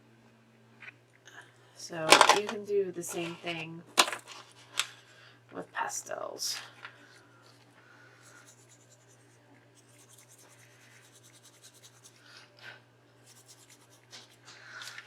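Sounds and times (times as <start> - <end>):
pastel scratching on paper: 8.2 - 12.3, 13.2 - 14.4.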